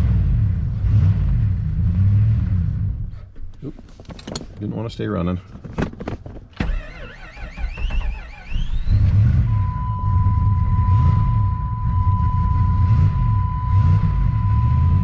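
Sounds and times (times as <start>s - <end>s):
engine cranking on starter: 6.6s - 9.4s
engine running rough: 8.6s - 15.0s
high-pitched warning tone: 9.5s - 15.0s.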